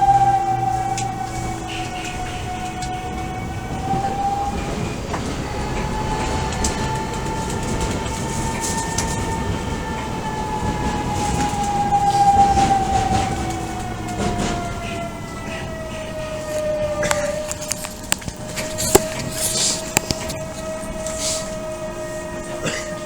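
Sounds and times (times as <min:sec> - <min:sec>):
electric train motor whine: 0:00.0 - 0:23.0
rail-joint clicks: 0:00.0 - 0:23.0
train rumble: 0:00.0 - 0:23.0.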